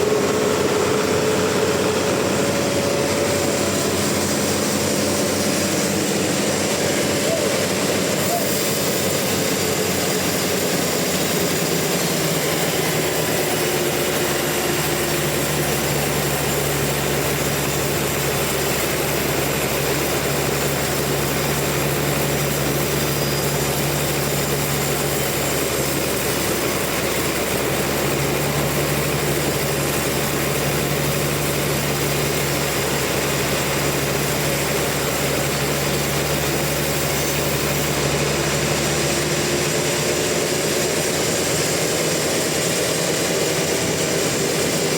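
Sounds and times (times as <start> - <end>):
sawmill machinery hum: 0.0 - 44.9.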